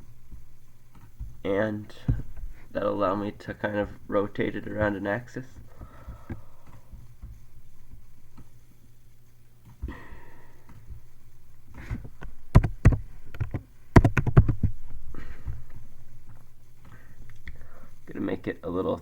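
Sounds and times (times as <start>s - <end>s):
sharp knocks and clicks: 0.0s - 18.2s
faint room hiss: 0.0s - 19.0s.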